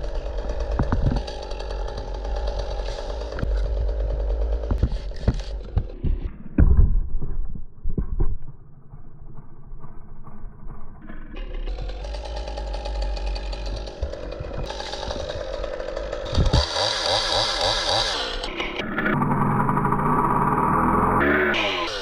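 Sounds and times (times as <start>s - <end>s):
chainsaw running: 0.0s - 6.4s, 9.0s - 22.0s
heavy thuds: 3.0s - 8.4s.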